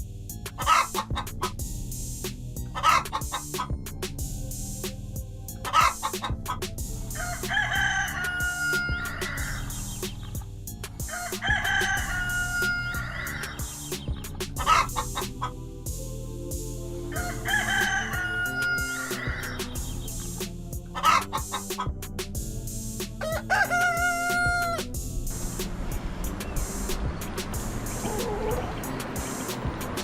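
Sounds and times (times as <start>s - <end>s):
chicken clucking: 0.6s - 1.5s, 2.6s - 3.7s, 5.6s - 10.4s, 11.1s - 15.5s, 20.9s - 21.9s, 23.2s - 24.8s, 26.4s - 29.6s
rooster crowing: 7.1s - 9.7s, 11.1s - 13.5s, 17.1s - 19.6s, 23.2s - 24.8s, 28.0s - 28.8s.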